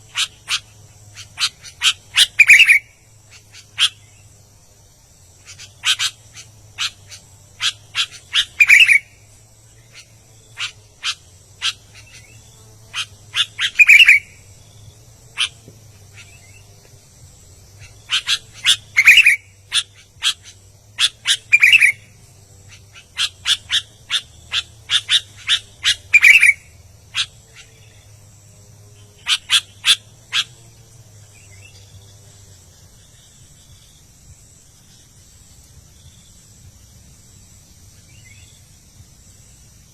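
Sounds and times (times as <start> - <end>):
bulbul singing chirps and whistles: 0.1 - 4.2, 5.4 - 9.2, 9.8 - 14.5, 17.8 - 28.1.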